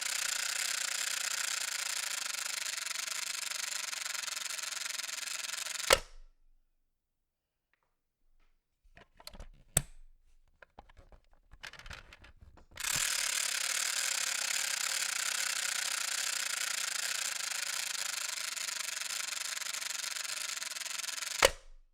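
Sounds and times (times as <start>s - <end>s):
toy toaster clicks and rattles: 0.0s - 6.1s, 10.6s - 21.6s.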